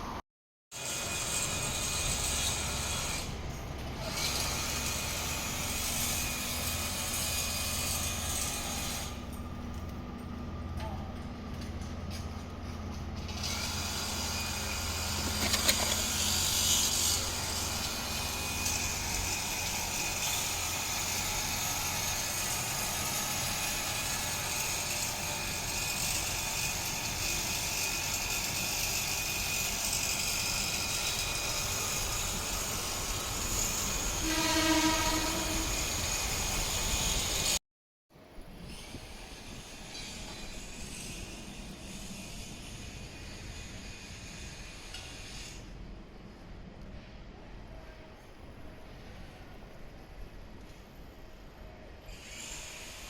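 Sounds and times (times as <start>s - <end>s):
electric train clattering past: 9.0s - 37.6s
train horn blast: 34.2s - 36.0s.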